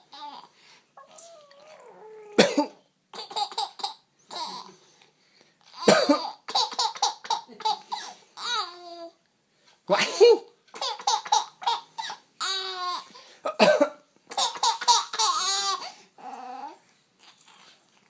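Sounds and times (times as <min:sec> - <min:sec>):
adult coughing: 0:02.4 - 0:02.8, 0:05.8 - 0:08.2, 0:10.0 - 0:10.5, 0:13.5 - 0:14.0
baby laughing: 0:03.1 - 0:04.7, 0:05.7 - 0:09.0, 0:10.1 - 0:13.1, 0:14.3 - 0:15.9.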